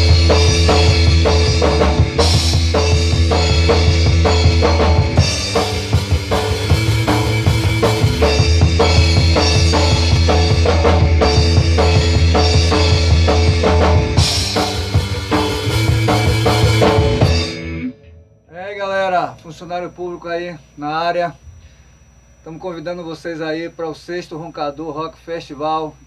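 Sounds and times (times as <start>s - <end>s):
rock music: 0.0s - 18.5s.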